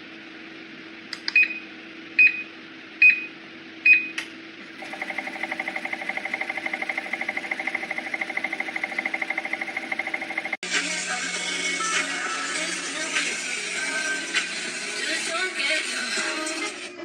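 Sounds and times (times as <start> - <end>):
treadmill motor hum: 4.8 - 10.6
music with fast pulsing beat: 4.8 - 16.3.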